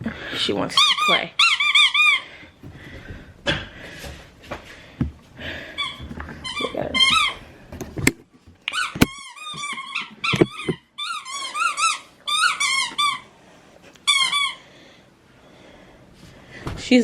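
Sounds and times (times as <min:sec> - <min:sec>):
squeaky toy squeaks: 0:00.7 - 0:02.2, 0:05.8 - 0:07.4, 0:08.7 - 0:13.3, 0:14.0 - 0:14.6.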